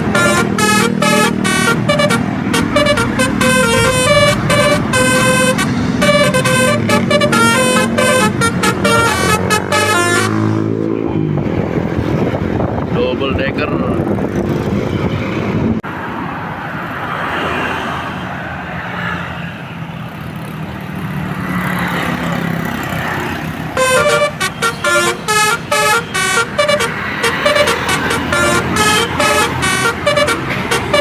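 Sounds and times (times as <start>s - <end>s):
musical air horn tune: 0.0s - 10.7s, 23.7s - 31.0s
bus engine: 0.0s - 31.0s
road traffic noise: 0.0s - 31.0s.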